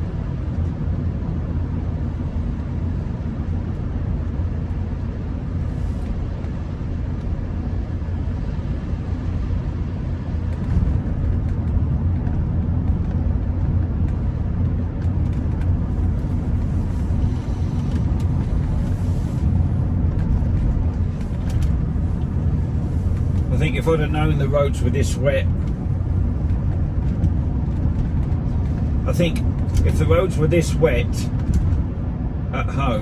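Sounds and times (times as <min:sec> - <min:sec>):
car engine and road rumble: 0:00.0 - 0:33.0.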